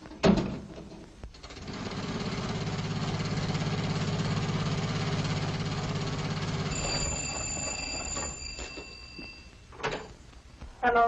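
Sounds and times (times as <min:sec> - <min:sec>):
telephone bell ringing: 0:06.4 - 0:09.7.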